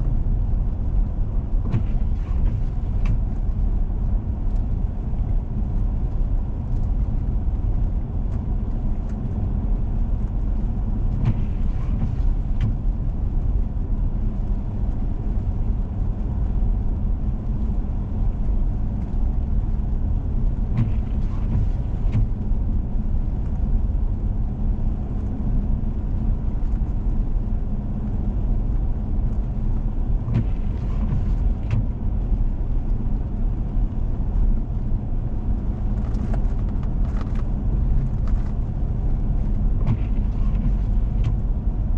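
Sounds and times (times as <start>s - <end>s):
tyre and road rumble: 0.0s - 41.9s
vehicle engine hum: 0.0s - 41.9s.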